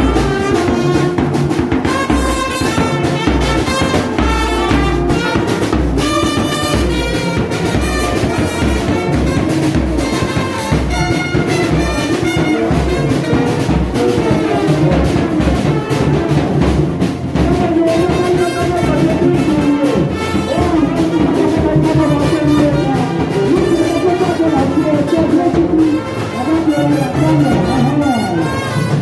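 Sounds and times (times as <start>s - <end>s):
music with brass and drums: 0.0s - 29.0s.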